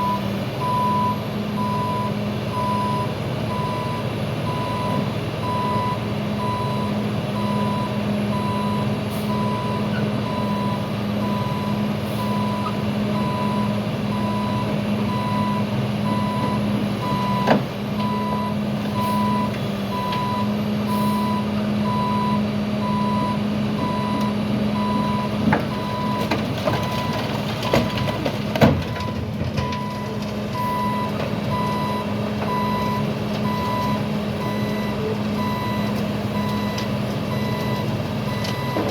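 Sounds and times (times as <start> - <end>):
heavy machine engine running: 0.0 - 38.9
backup alarm beeping: 21.1 - 26.3, 28.9 - 38.9.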